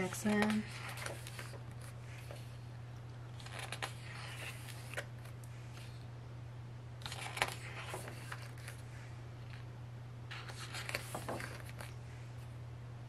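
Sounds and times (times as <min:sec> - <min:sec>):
book pages turning: 0:00.0 - 0:02.6, 0:03.3 - 0:06.1, 0:07.0 - 0:08.8, 0:10.3 - 0:12.0
steady low hum: 0:00.0 - 0:13.0.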